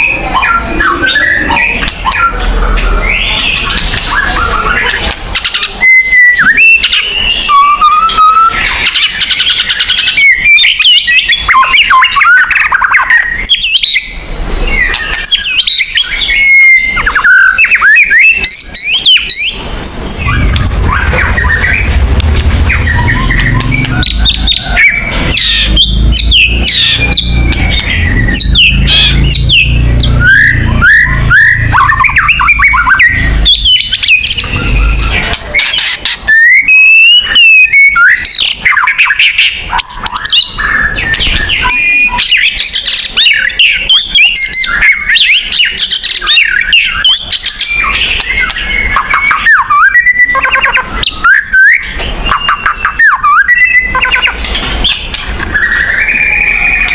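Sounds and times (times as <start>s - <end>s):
songbird singing whistles and trills: 0.0s - 56.9s
low rumble: 19.6s - 35.3s.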